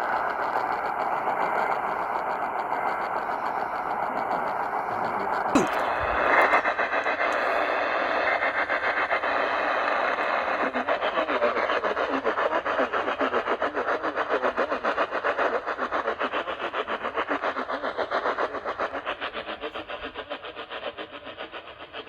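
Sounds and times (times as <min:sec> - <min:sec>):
pulsing radio static hiss: 0:00.5 - 0:15.0.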